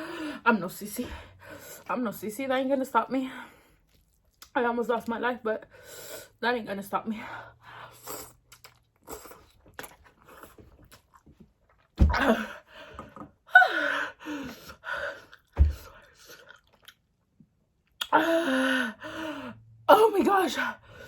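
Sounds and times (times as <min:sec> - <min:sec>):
person chewing noodles: 0:07.8 - 0:12.0, 0:16.2 - 0:17.1.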